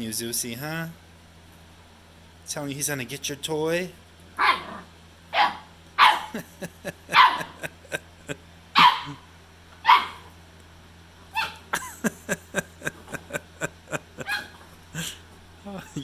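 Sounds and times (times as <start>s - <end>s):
puppy yipping: 4.4s - 6.4s, 7.1s - 7.6s, 8.8s - 9.2s, 9.8s - 10.3s, 11.3s - 11.7s, 14.2s - 14.6s
puppy barking: 4.4s - 6.5s, 7.1s - 7.8s, 8.8s - 10.4s, 11.3s - 11.8s, 14.2s - 14.7s.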